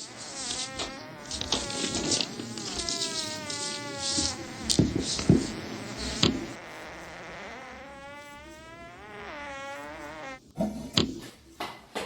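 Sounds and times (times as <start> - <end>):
high buzzing whine: 0.0 - 10.4
hissy bursts: 0.0 - 10.4
short thumps: 0.4 - 6.6.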